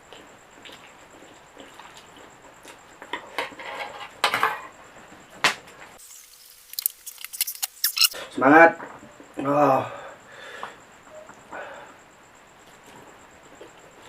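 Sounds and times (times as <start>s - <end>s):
wet chewing with smacking: 0.0s - 3.0s.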